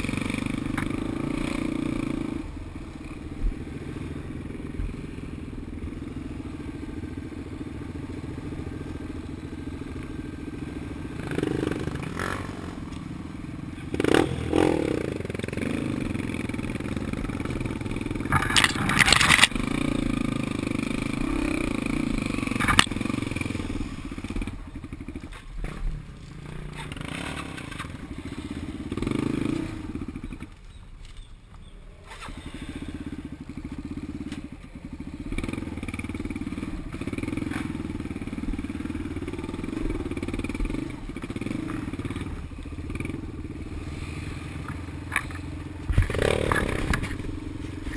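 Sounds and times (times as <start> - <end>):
vehicle engine revving: 8.1 - 30.4, 34.9 - 47.9.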